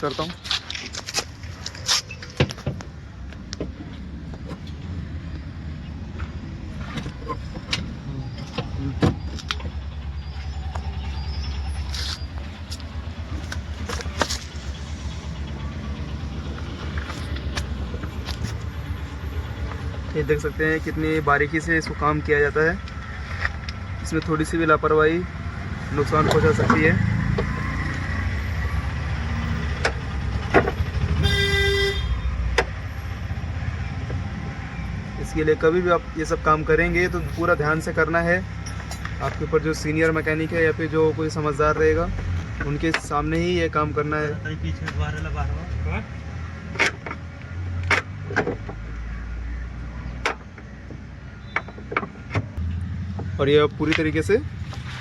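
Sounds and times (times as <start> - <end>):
traffic rumble: 0.0 - 55.0
steady low rumble: 2.8 - 26.2
car horn honk: 31.0 - 32.3.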